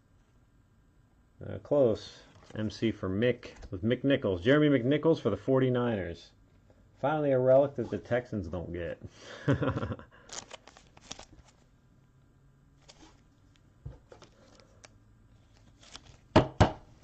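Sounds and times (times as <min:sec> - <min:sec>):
cards rustling on a table: 0:10.3 - 0:11.7, 0:12.8 - 0:16.3.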